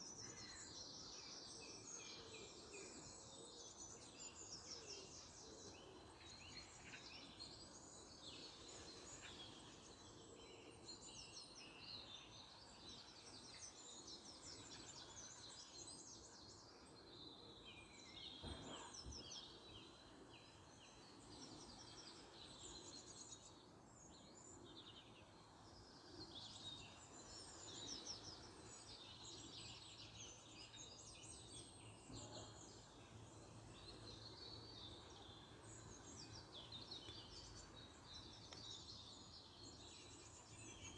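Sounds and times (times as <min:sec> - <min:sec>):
songbirds chirping: 0:00.0 - 0:40.9
faint knock: 0:18.4 - 0:19.2.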